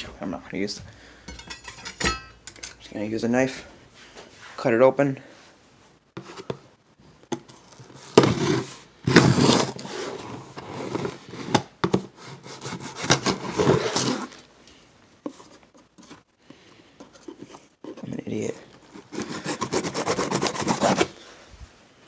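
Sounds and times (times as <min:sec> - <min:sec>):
knife cutting cardboard box: 0:07.8 - 0:14.4, 0:18.9 - 0:21.2.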